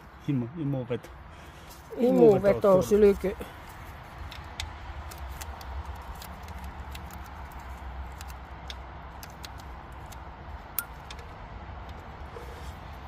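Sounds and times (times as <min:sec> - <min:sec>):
clicks and taps on engine parts: 0:04.2 - 0:12.1.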